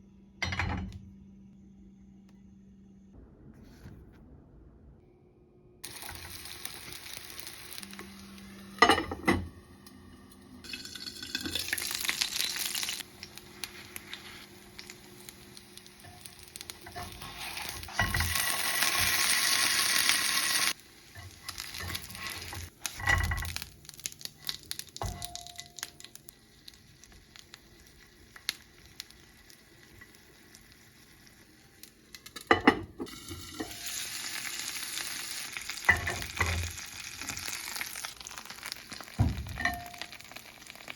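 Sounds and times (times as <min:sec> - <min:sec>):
food sizzling on a griddle: 0:05.8 - 0:09.1, 0:10.7 - 0:40.9.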